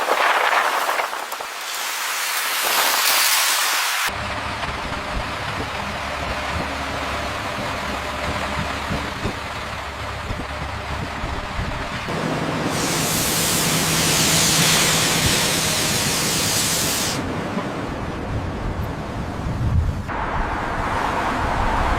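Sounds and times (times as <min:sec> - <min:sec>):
loud hiss: 0:00.4 - 0:04.1, 0:12.6 - 0:17.3.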